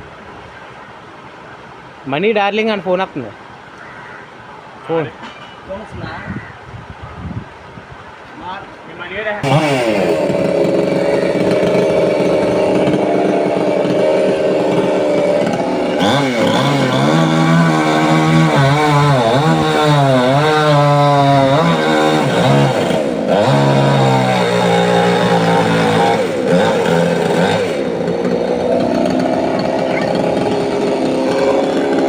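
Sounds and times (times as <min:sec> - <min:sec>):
chainsaw cutting wood: 0:09.4 - 0:32.0.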